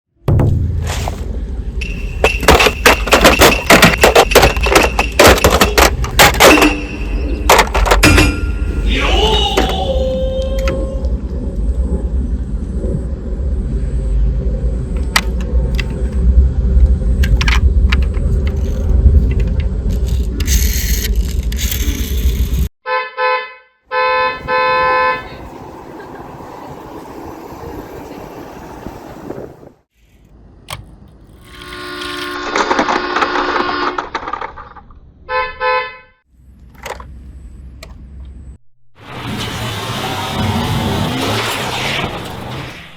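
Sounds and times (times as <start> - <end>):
mixed vehicle noise: 0.2 - 22.7, 23.9 - 42.9
steady tones: 0.3 - 10.1
toy vehicles rolling: 1.8 - 8.5, 17.2 - 22.7, 30.8 - 35.0
low rumble: 6.8 - 22.6
vehicle horn honks: 22.8 - 25.5, 31.5 - 34.2, 35.3 - 36.2.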